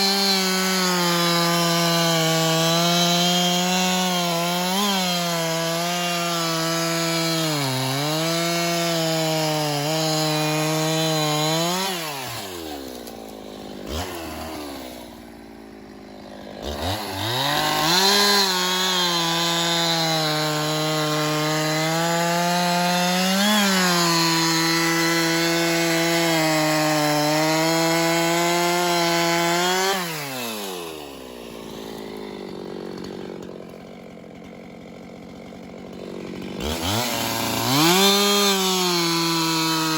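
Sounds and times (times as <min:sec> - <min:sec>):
chainsaw cutting wood: 0:00.0 - 0:39.9
chainsaw idling: 0:00.0 - 0:39.9.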